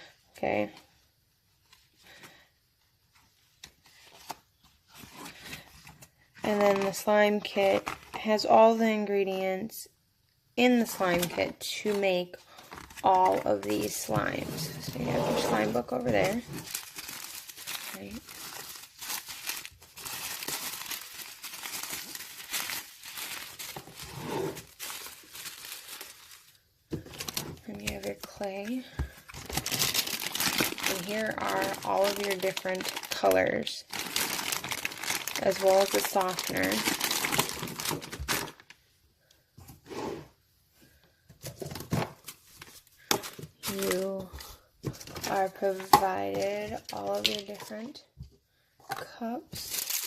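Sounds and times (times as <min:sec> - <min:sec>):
packaging crinkling and rustling: 0:03.1 - 0:08.4, 0:10.8 - 0:38.8, 0:41.4 - 0:48.0, 0:49.5 - 0:50.0
plastic containers clicking and rustling: 0:43.1 - 0:48.0.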